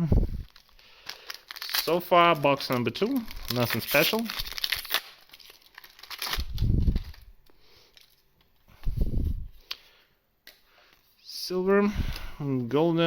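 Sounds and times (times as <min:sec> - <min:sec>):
cards and wrappers rustling: 0:00.4 - 0:08.6.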